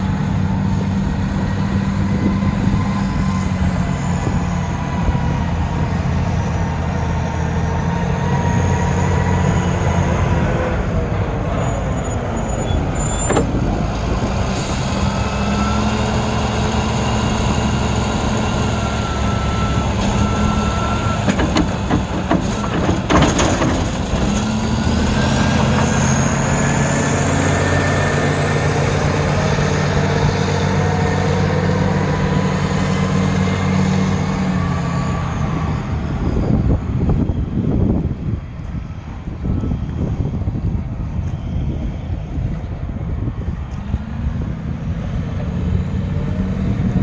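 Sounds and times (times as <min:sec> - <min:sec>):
wheel loader diesel engine: 0:00.0 - 0:47.0
knocks: 0:21.2 - 0:24.4.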